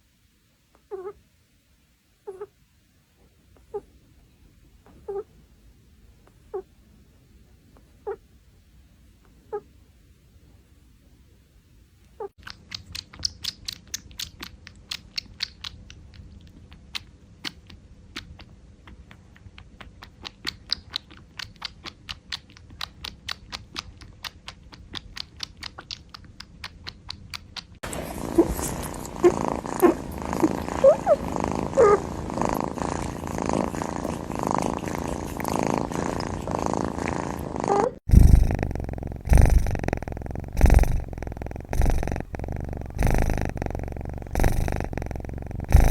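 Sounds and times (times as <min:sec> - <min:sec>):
cat purring: 0:04.8 - 0:05.5, 0:17.4 - 0:45.9
kitten drinking milk: 0:12.4 - 0:45.9.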